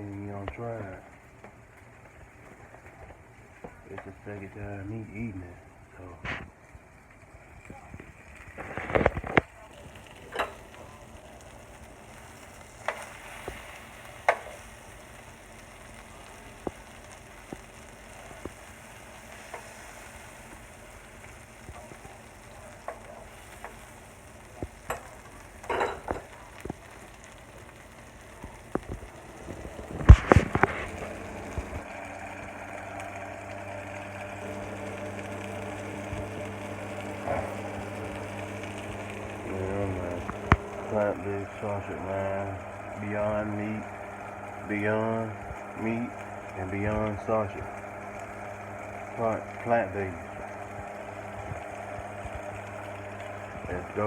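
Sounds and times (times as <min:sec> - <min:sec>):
steady hiss: 0:00.0 - 0:54.0
low hum: 0:26.5 - 0:54.0.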